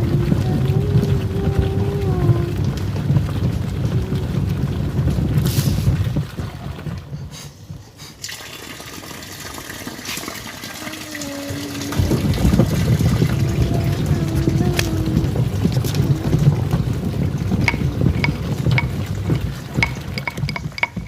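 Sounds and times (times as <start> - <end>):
motor hum: 0.0 - 7.0, 11.2 - 21.0
water churning in washing machine: 0.0 - 21.0
water sloshing: 10.9 - 21.0.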